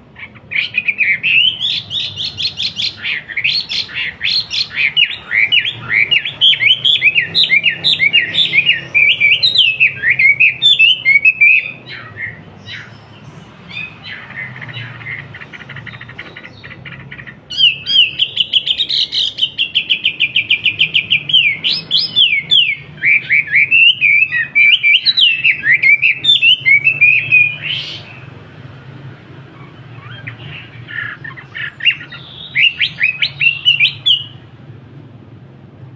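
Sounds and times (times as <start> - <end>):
bird chirping and trilling: 0.0 - 34.6.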